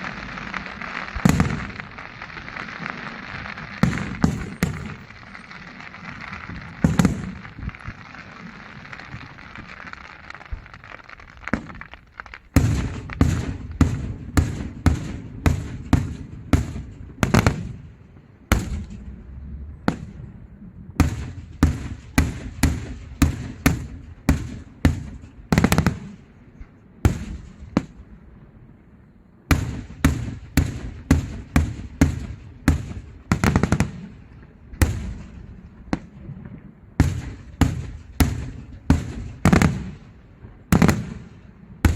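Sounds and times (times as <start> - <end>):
fireworks crackling hiss: 0.0 - 15.9
fireworks bangs: 0.0 - 28.2, 29.5 - 41.9.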